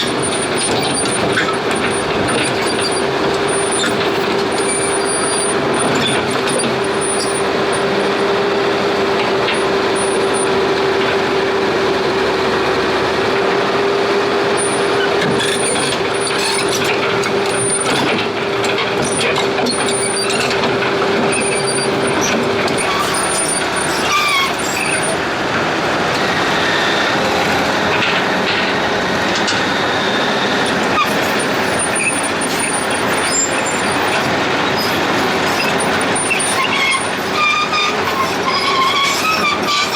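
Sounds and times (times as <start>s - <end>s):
heavy diesel engine running: 0.0s - 39.9s.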